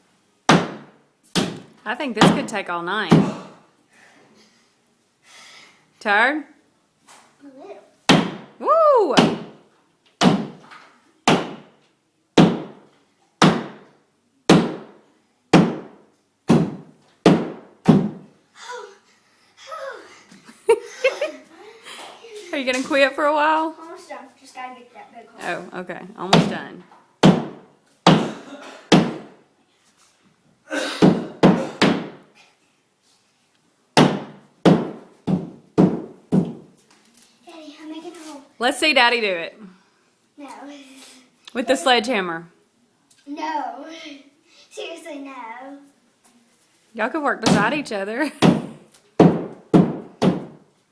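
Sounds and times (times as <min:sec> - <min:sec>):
hammer striking drywall: 0:00.5 - 0:02.5, 0:08.1 - 0:08.5, 0:10.2 - 0:10.6, 0:11.3 - 0:11.7, 0:12.4 - 0:12.8, 0:13.4 - 0:13.9, 0:14.5 - 0:18.2, 0:27.2 - 0:28.3, 0:28.9 - 0:29.4, 0:31.0 - 0:32.2, 0:34.0 - 0:36.6, 0:48.4 - 0:50.6.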